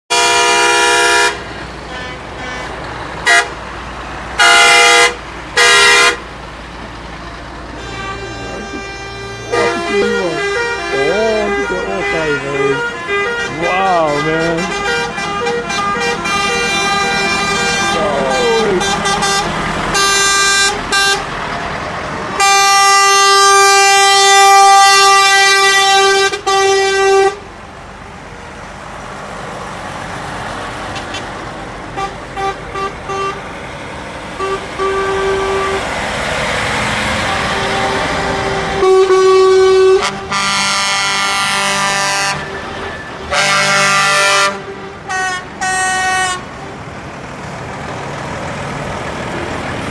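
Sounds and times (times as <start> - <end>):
truck air horns: 0.1 - 3.7, 4.4 - 6.4, 7.1 - 21.4, 22.3 - 27.5, 30.9 - 33.5, 34.3 - 46.8
truck engine running: 0.1 - 49.9.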